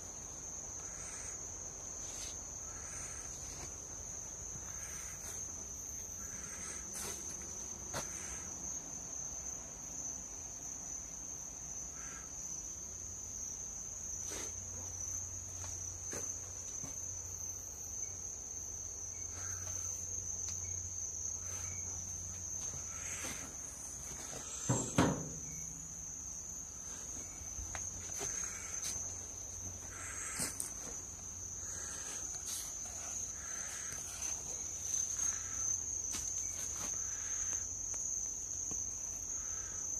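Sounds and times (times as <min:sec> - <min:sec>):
crickets trilling: 0:00.0 - 0:39.9
loud knock: 0:24.7 - 0:25.5.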